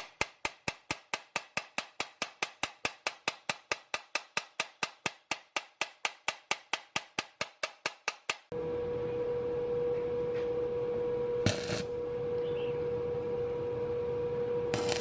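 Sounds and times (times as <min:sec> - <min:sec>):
hammer tapping on metal: 0:00.0 - 0:08.5.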